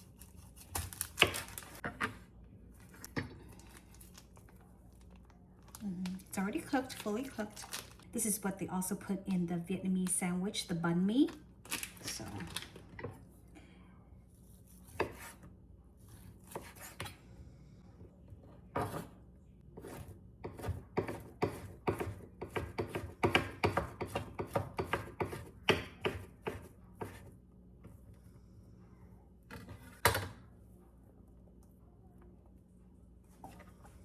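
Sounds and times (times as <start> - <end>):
knife chopping on cutting board: 14.8 - 15.4, 16.4 - 17.1, 19.8 - 27.3.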